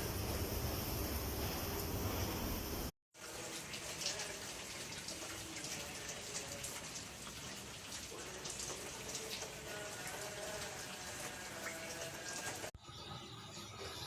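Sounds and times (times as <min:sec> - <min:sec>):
water running and splashing: 0:03.1 - 0:12.8.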